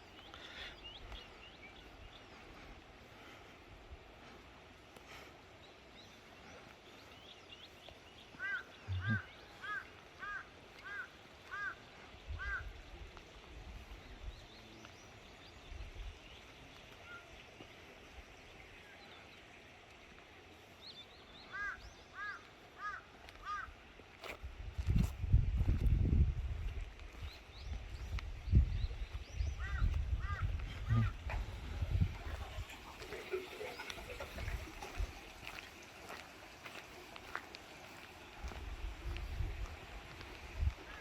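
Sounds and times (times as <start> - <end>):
distant crow cawing: 8.3 - 12.7, 21.5 - 23.7, 29.6 - 30.5.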